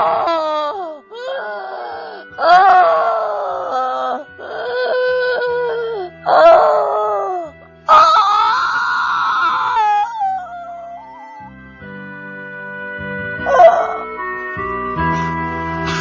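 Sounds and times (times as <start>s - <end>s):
voice wailing and moaning: 0.0s - 11.6s, 13.4s - 14.2s
sustained music drone: 0.0s - 16.0s.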